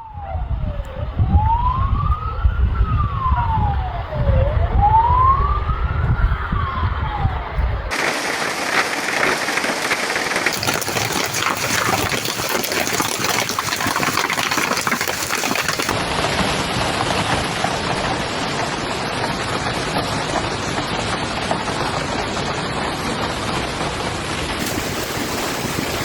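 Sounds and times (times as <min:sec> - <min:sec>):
hail and heavy rain pelting: 0:07.9 - 0:26.0.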